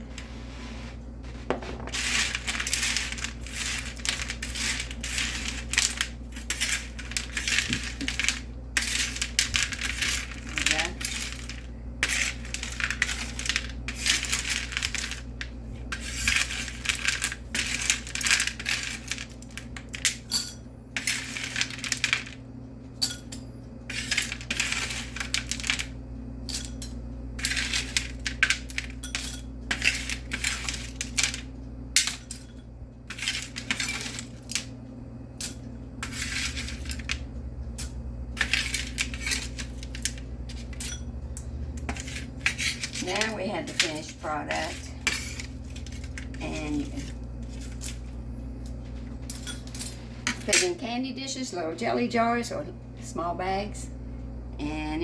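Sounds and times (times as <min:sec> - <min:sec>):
hard candy rattling in container: 0:01.8 - 0:20.2, 0:23.9 - 0:25.9, 0:27.4 - 0:29.0, 0:29.7 - 0:32.2.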